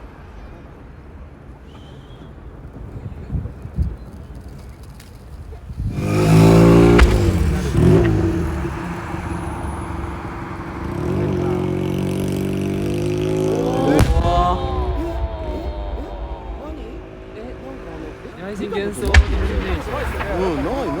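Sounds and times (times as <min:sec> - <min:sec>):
vehicle engine running: 0:05.7 - 0:21.0
firework bursts booming: 0:06.0 - 0:10.9, 0:13.8 - 0:21.0.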